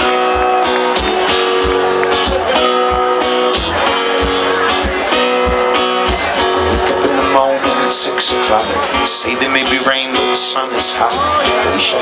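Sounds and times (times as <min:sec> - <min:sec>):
steady drum beat: 0:00.0 - 0:07.8
bass: 0:00.0 - 0:12.0
strummed guitar: 0:00.0 - 0:12.0.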